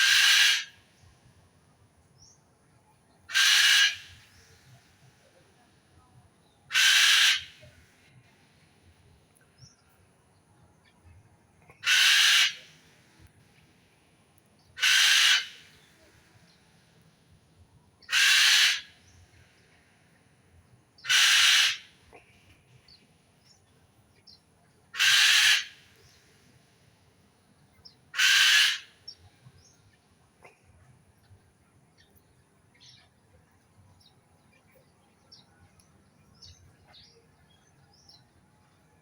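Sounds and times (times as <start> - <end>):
bird's harsh call: 0.0 - 0.8, 3.3 - 4.7, 6.7 - 7.7, 11.8 - 12.8, 14.8 - 16.1, 18.0 - 19.2, 21.0 - 22.0, 25.0 - 26.2, 28.1 - 29.0.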